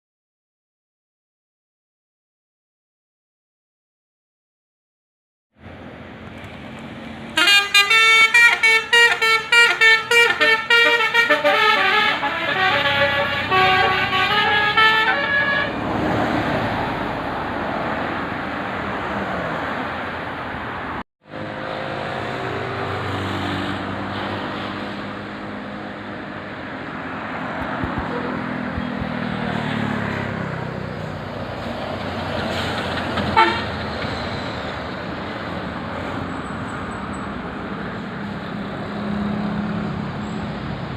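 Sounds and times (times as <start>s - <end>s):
road noise: 5.5s - 40.9s
bus engine running: 5.6s - 19.1s, 19.8s - 40.9s
multi-tone bus horn melody: 7.3s - 15.9s, 33.3s - 33.8s.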